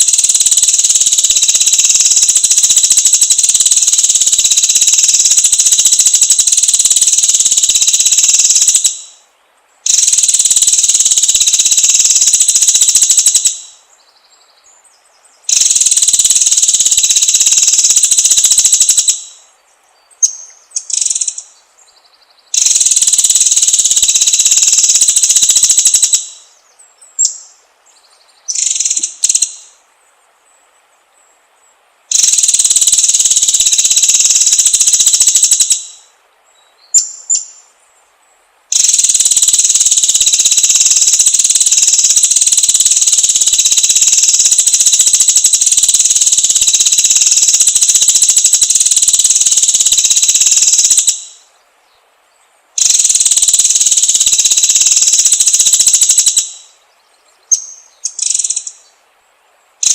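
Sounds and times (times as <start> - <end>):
high-pitched steady buzzing: 0.0 - 13.9, 15.2 - 19.5, 22.6 - 27.6, 31.2 - 36.2, 38.7 - 51.5, 52.8 - 56.9.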